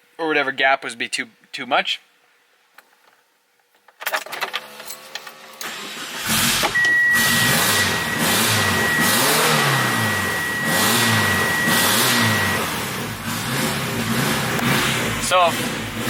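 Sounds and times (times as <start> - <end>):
engine cranking on starter: 4.1 - 16.0
car engine revving loudly: 5.6 - 16.0
steady high whistle: 6.8 - 12.9.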